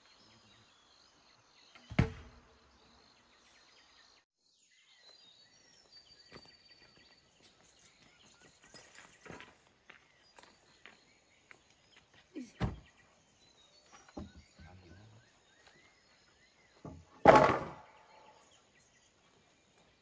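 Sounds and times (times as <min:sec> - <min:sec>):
knocks and thuds: 0:01.9 - 0:02.4, 0:16.8 - 0:17.9.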